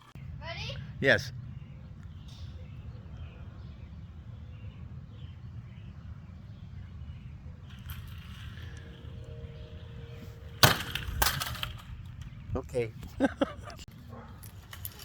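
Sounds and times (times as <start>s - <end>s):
steady low rumble: 0.0s - 14.3s
toy helicopter launch rustle: 10.6s - 12.0s, 14.4s - 15.0s.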